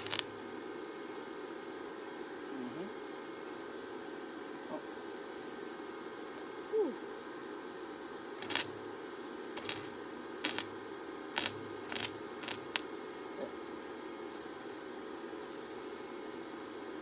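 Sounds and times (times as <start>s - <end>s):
arc welding bursts: 0.0s - 0.4s, 8.4s - 8.9s, 9.6s - 10.7s, 11.4s - 12.9s
welding machine hum: 0.0s - 0.4s, 8.4s - 9.0s, 9.6s - 10.8s, 11.4s - 12.9s.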